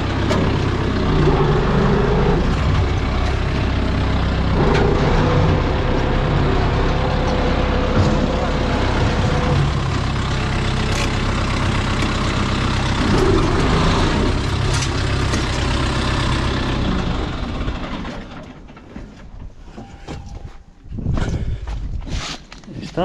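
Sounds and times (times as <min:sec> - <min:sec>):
tractor engine running: 0:00.0 - 0:22.0.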